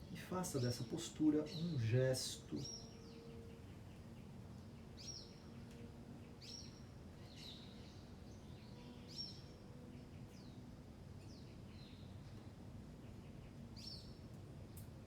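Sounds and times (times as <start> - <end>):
faint bird chirping: 0.0 - 14.2.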